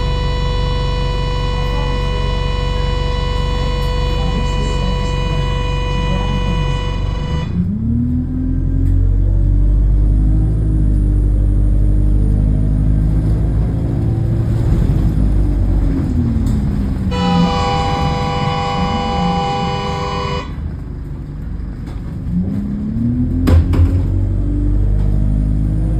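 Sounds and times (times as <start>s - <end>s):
vehicle horn: 0.0s - 8.0s, 16.7s - 20.8s
bus engine rumbling: 0.0s - 25.9s.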